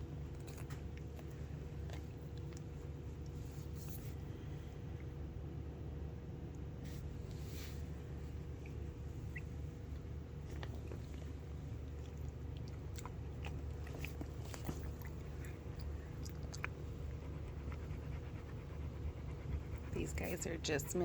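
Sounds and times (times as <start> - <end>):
wet smacks and clicks: 0.2 - 3.4, 8.6 - 17.8.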